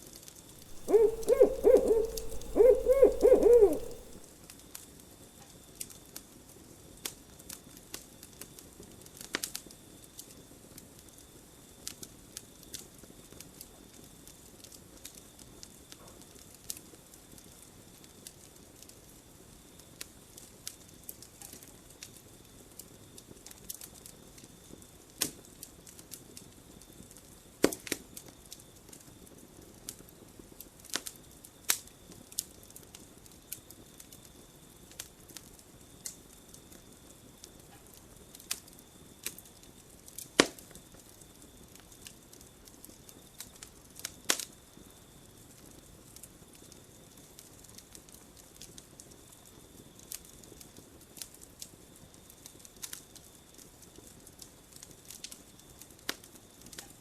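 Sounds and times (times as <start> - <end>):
campfire crackling and popping: 42.8 - 44.5.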